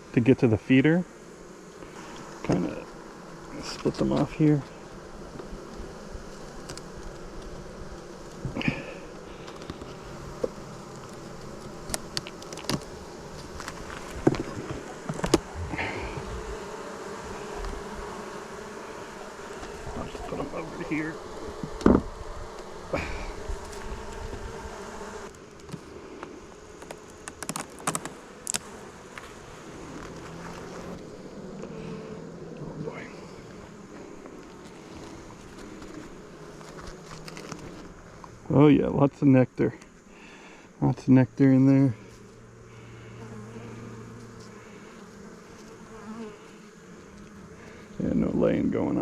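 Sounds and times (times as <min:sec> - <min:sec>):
honeybees buzzing: 0:00.0 - 0:49.0.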